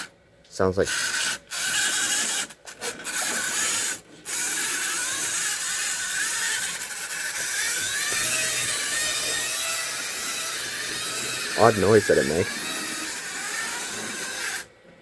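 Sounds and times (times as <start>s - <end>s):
odd mechanical noise: 0.0s - 15.0s
toy train motor and gears running: 0.8s - 14.7s.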